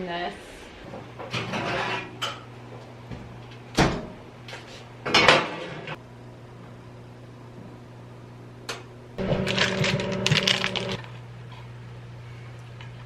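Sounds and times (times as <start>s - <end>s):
steady low hum: 5.9s - 13.0s.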